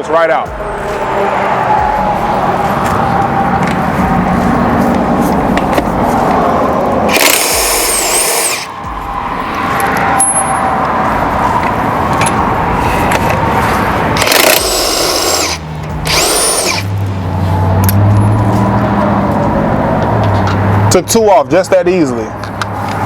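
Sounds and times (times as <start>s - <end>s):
impact wrench hammering: 7.1s - 10.6s, 14.2s - 16.9s.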